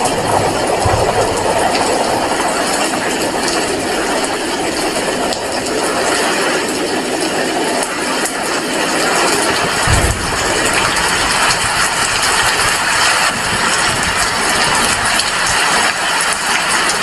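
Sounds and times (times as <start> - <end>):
heavy rain falling: 0.0 - 17.0
low thump: 0.3 - 3.0, 9.8 - 12.5.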